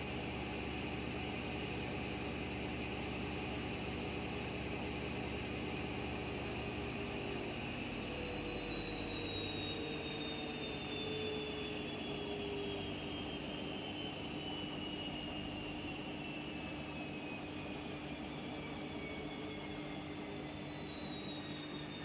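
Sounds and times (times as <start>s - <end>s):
motor whine falling in pitch: 6.1s - 22.0s.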